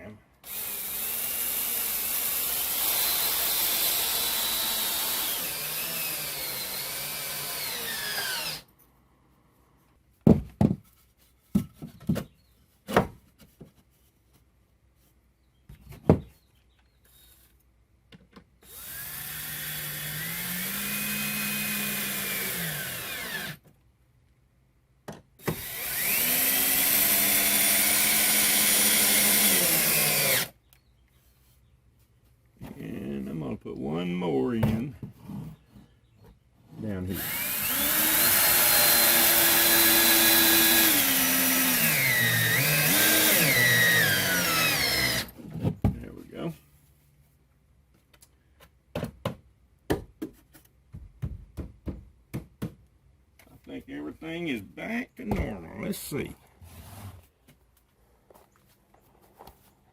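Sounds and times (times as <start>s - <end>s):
power drill driving screws into wood: 0.4s - 8.7s, 18.6s - 23.6s, 25.4s - 30.6s, 37.2s - 45.4s.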